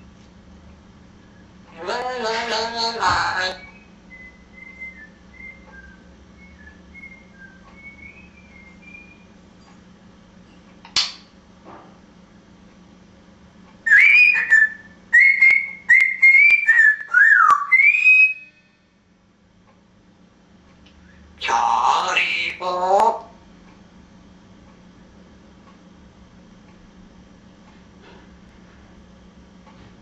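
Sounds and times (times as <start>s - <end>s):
parrot whistling: 1.8s - 9.3s, 13.9s - 18.6s
sharp click: 10.8s - 11.3s.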